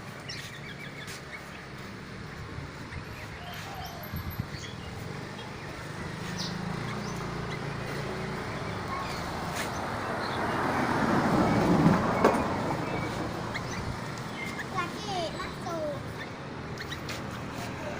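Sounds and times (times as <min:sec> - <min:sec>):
motor vehicle passing: 0:00.0 - 0:17.9.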